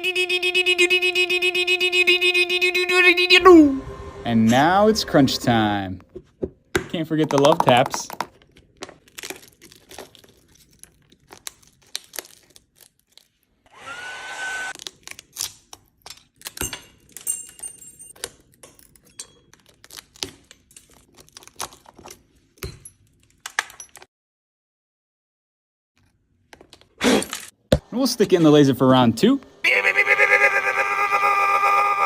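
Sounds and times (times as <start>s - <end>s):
metal tool breaking glass: 16.0s - 21.1s, 21.9s - 24.0s.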